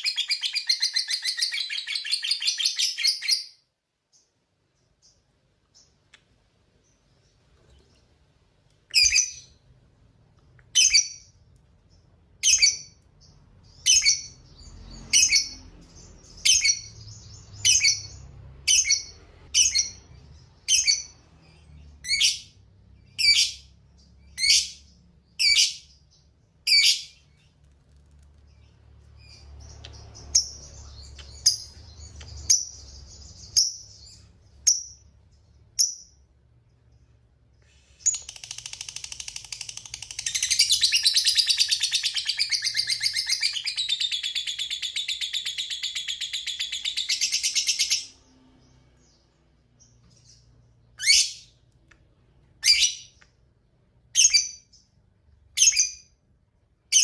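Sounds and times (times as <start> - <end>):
lovebird chattering and twittering: 0.0 - 3.6, 8.9 - 9.6, 12.4 - 26.0, 28.5 - 35.0, 38.0 - 48.3.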